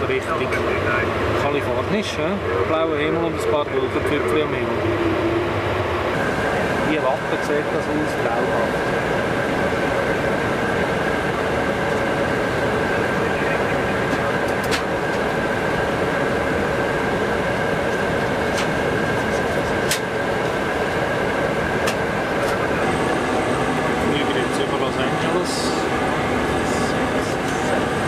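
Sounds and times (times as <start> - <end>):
airliner cabin engine rush: 0.0 - 28.0.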